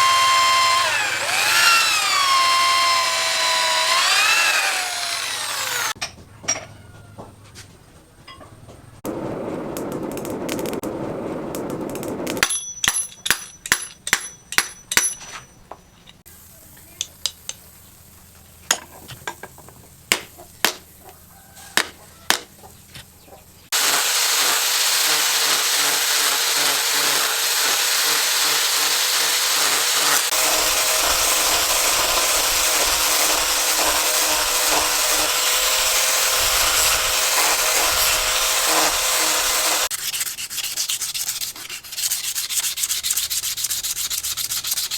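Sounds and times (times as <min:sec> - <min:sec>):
power sander grinding: 0:00.0 - 0:06.0, 0:23.7 - 0:39.9.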